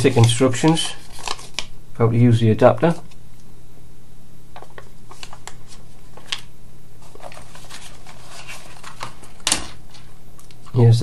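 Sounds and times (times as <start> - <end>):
paper and plastic packaging rustling: 0.0 - 1.7, 4.6 - 10.8
low electrical hum: 0.0 - 11.0.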